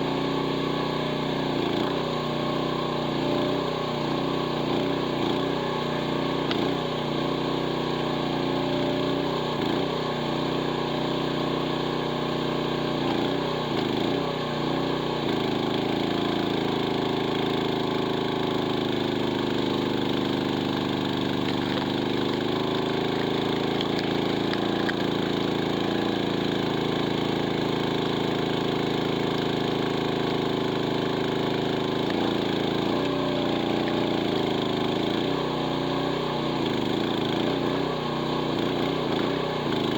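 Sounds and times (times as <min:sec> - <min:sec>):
excavator engine running: 0:15.4 - 0:39.9.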